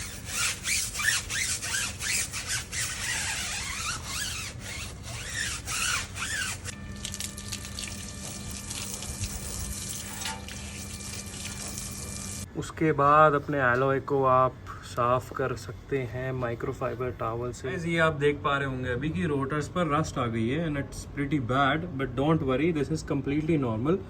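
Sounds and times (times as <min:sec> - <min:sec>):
bristles squeaking on rubber: 0:00.0 - 0:06.7
brush scrubbing tyre: 0:00.0 - 0:06.7
low hum: 0:06.6 - 0:12.5.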